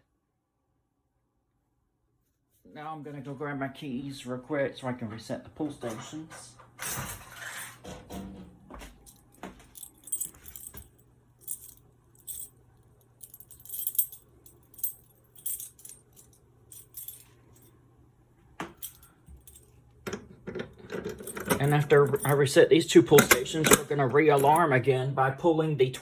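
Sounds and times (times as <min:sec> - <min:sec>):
faint steady hum: 0:07.9 - 0:26.0
keys jingling: 0:09.1 - 0:12.6, 0:13.2 - 0:17.7, 0:18.7 - 0:19.8, 0:21.0 - 0:22.4, 0:24.4 - 0:24.7.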